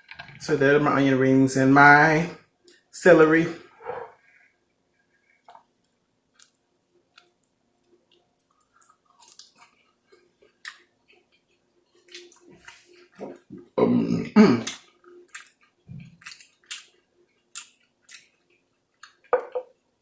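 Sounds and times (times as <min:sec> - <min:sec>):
person chewing wet food: 0:04.9 - 0:13.8, 0:14.6 - 0:20.0.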